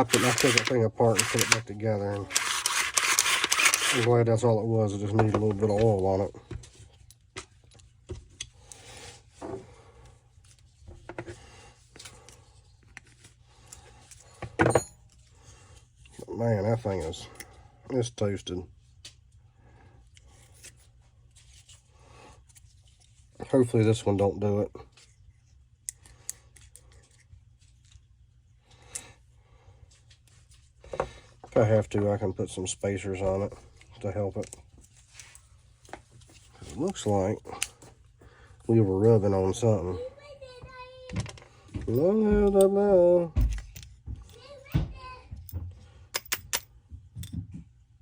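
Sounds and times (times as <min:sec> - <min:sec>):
saw parts scraping and clicking: 0:00.0 - 0:04.1.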